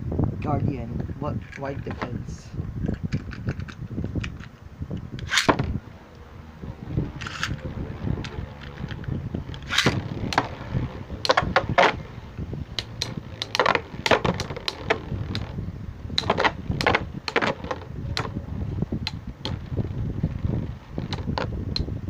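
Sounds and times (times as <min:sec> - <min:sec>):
spinning tops whirring: 0:07.1 - 0:18.4
spinning tops clacking: 0:12.8 - 0:15.6.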